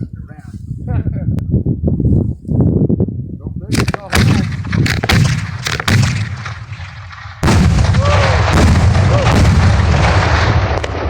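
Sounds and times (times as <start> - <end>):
firework bangs and cracks: 3.8 - 11.0
loud burst of dense noise: 7.4 - 10.8.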